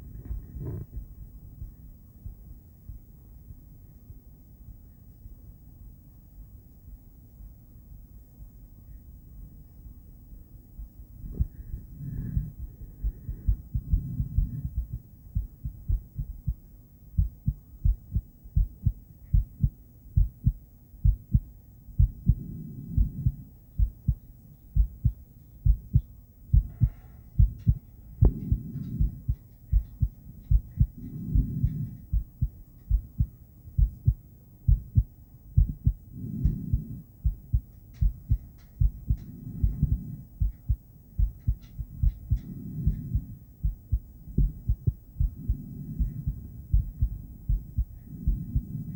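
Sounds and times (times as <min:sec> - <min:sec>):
heartbeat thumps on doppler: 0:11.2 - 0:48.9.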